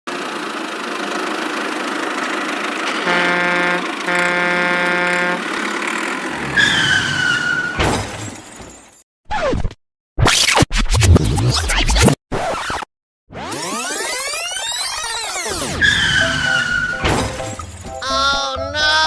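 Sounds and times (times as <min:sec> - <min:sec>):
cartoon engine running: 0:00.1 - 0:07.8, 0:13.4 - 0:19.0
cartoon horn honks: 0:02.9 - 0:05.7, 0:15.8 - 0:18.5
slowly falling whistle: 0:15.6 - 0:17.0.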